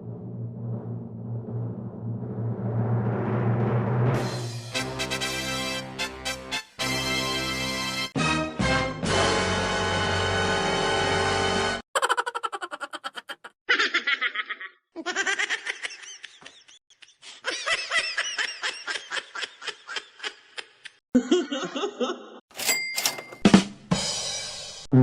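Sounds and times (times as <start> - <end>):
laughter sound effects: 12.0 - 22.4.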